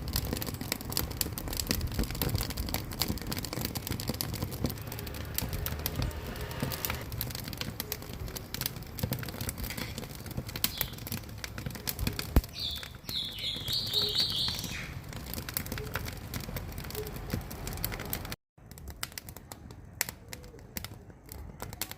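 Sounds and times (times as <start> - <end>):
wood fire crackling: 0.0 - 21.9
bird chirping: 10.7 - 11.2, 12.4 - 15.0.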